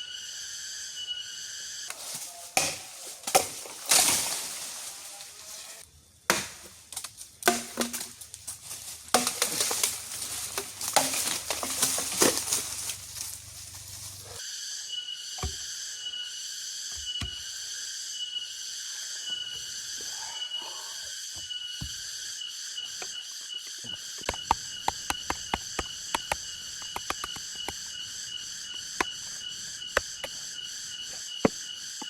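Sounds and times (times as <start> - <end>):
wood crunching and cracking: 7.4 - 14.4, 22.9 - 31.8.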